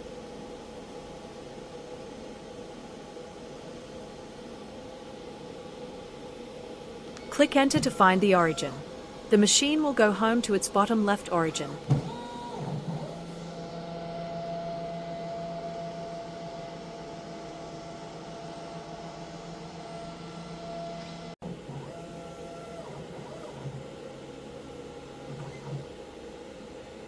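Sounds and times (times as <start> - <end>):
cnc router motors whining: 21.4 - 27.0.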